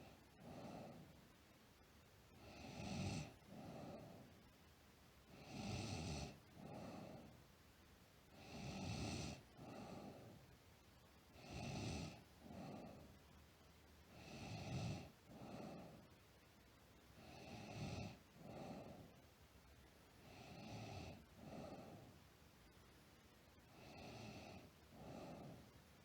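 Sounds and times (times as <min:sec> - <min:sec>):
girl snoring: 0:05.4 - 0:07.3, 0:08.4 - 0:10.2, 0:11.4 - 0:13.0.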